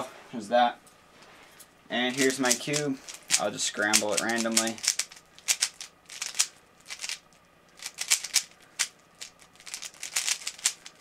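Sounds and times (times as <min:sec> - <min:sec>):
plastic puzzle cube clicking: 0:07.8 - 0:11.0.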